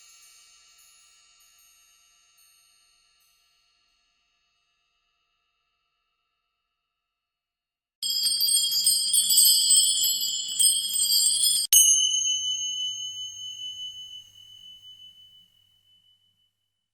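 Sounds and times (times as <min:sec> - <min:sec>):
single bell strike ringing: 0:08.0 - 0:15.5
metal bell rung rapidly: 0:08.0 - 0:15.9.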